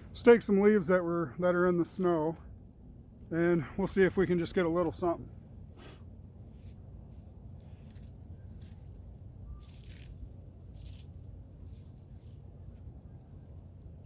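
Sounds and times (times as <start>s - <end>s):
low steady rumble: 0.0s - 14.0s
dry leaves rustling and crunching: 7.7s - 13.7s.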